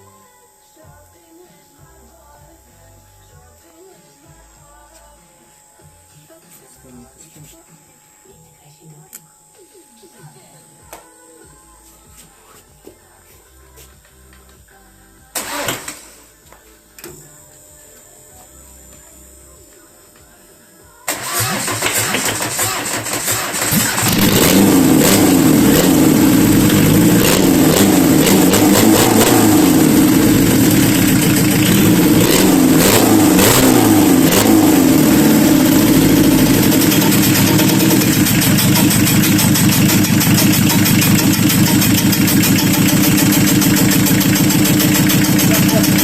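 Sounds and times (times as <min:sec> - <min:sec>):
diesel engine cranking and idling: 0:15.4 - 0:16.1, 0:21.1 - 0:46.0.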